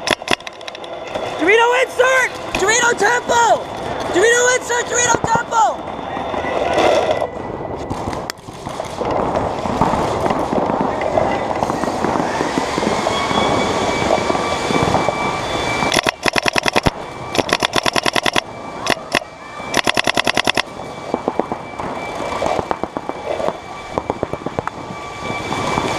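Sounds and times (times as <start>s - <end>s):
paintball marker rapid firing: 0.0s - 0.5s, 15.9s - 20.6s.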